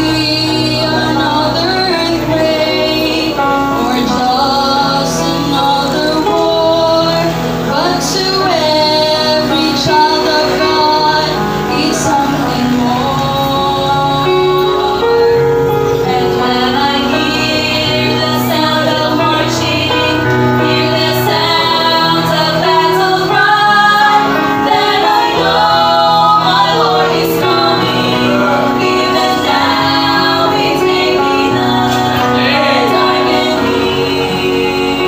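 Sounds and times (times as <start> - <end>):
instrumental accompaniment: 0.0 - 35.0
vocal trio singing gospel: 0.0 - 35.0.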